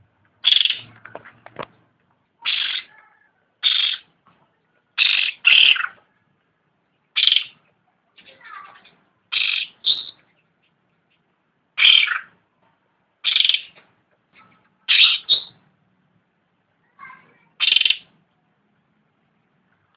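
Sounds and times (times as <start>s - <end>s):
bird chatter: 0.4s - 1.0s, 2.4s - 4.1s, 5.0s - 6.1s, 7.0s - 12.4s, 13.2s - 13.8s, 14.4s - 15.6s, 17.0s - 18.2s
bird calling: 0.4s - 1.2s, 2.4s - 4.2s, 5.0s - 6.2s, 7.1s - 7.7s, 9.3s - 11.2s, 11.8s - 12.4s, 13.2s - 13.8s, 14.4s - 15.6s, 17.0s - 18.2s.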